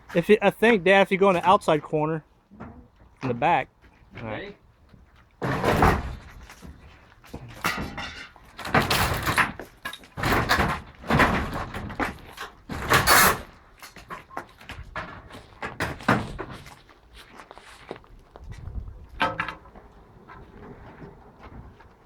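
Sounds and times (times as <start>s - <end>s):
wooden barn crashing and rattling: 5.4s - 16.8s, 19.2s - 21.8s.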